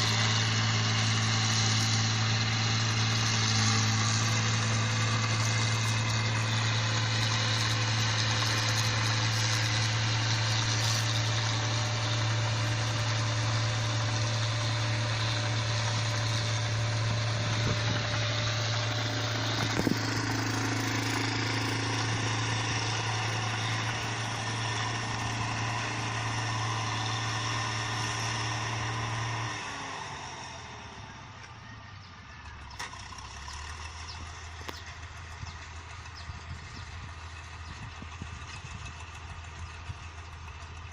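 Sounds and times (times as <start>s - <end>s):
machine engine humming: 0.0s - 40.9s.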